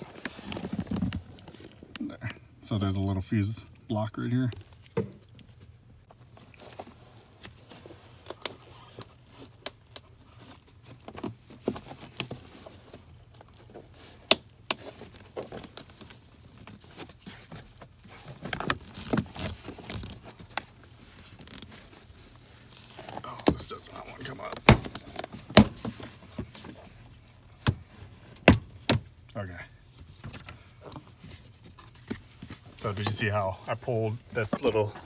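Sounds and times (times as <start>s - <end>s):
handling rustle: 4.6s - 35.0s.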